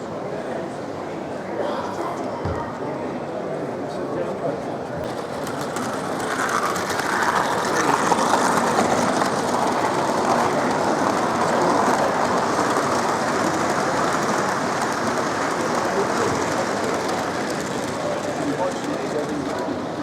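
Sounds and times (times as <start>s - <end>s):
model train wheels clicking on rails: 5.0s - 20.0s.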